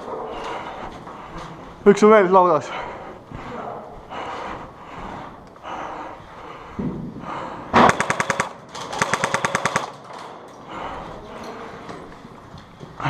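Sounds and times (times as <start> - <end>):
airsoft gun full-auto bursts: 7.8 - 10.0.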